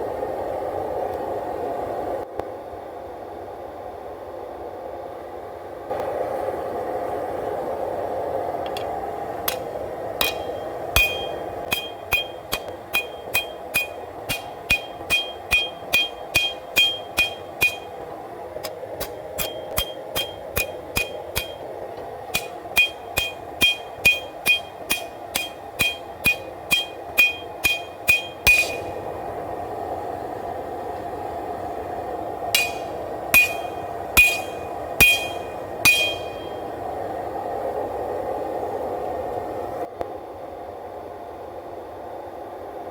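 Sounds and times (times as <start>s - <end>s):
hammer ringing on anvil: 9.5s - 29.2s, 32.6s - 36.8s.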